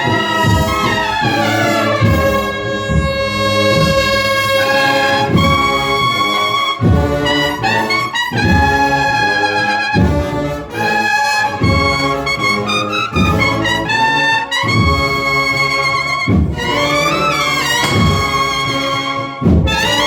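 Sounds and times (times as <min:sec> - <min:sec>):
brass band playing chords: 0:00.0 - 0:20.0
low drum beats: 0:17.8 - 0:19.8.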